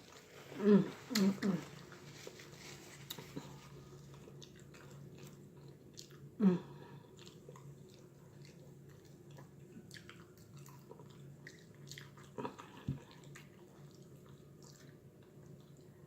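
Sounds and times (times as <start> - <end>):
chewing and mouth smacks: 3.0 - 6.4, 7.1 - 16.0.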